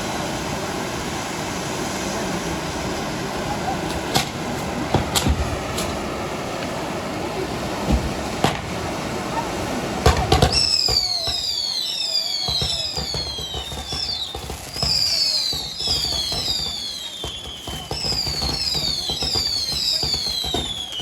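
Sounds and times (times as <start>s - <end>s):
fireworks crackling: 0.0s - 21.0s
fireworks rumble: 0.0s - 21.0s
whistling fireworks: 0.0s - 21.0s.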